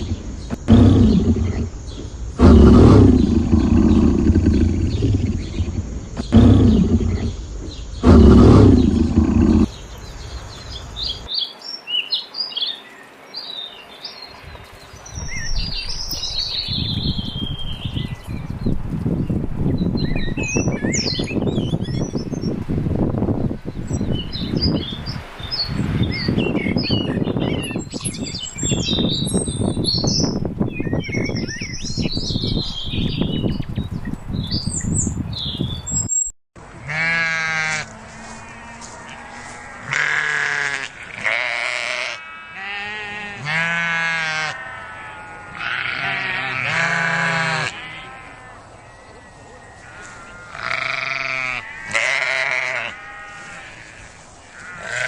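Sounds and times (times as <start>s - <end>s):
loud rumbling noise: 0.0s - 9.8s
birds chirping: 0.0s - 36.3s, 43.5s - 55.0s
sheep or goat bleating: 36.8s - 48.6s, 49.6s - 55.0s.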